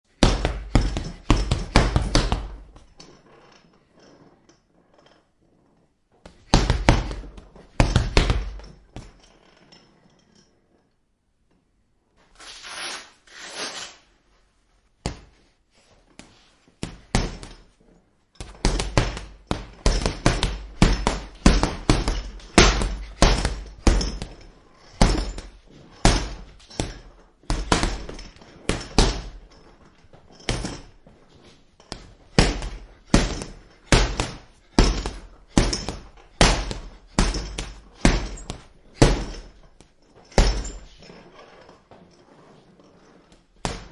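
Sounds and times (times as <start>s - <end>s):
gloves punching heavy bag: 0.1s - 2.9s, 6.2s - 9.2s, 15.0s - 15.3s, 16.2s - 17.7s, 18.4s - 41.1s, 43.5s - 43.9s.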